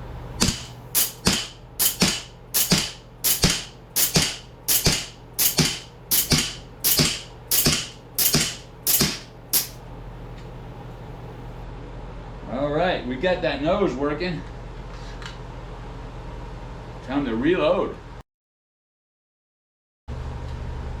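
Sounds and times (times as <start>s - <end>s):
air pistol shots: 0.4s - 9.8s.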